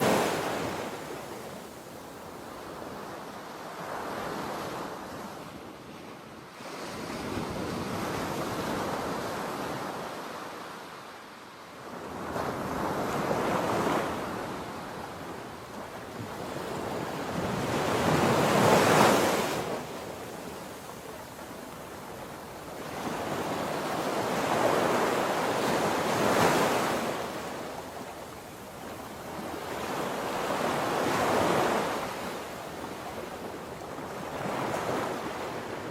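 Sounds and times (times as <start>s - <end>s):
sea waves breaking: 0.0s - 1.8s.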